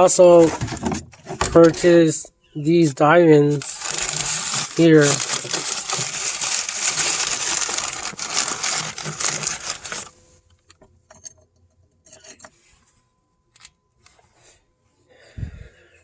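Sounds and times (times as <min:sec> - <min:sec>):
plastic rattling and crinkling: 0:00.0 - 0:02.0, 0:03.5 - 0:10.2.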